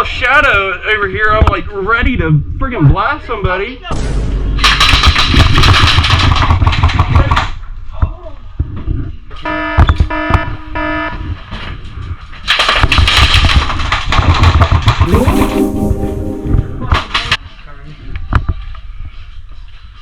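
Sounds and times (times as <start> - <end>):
pulsed beeps: 15.1 - 17.4.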